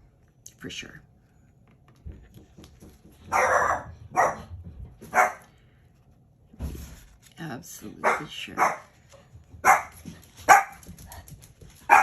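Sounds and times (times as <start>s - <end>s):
dog barking: 3.3s - 5.5s, 8.0s - 9.0s, 9.6s - 11.0s.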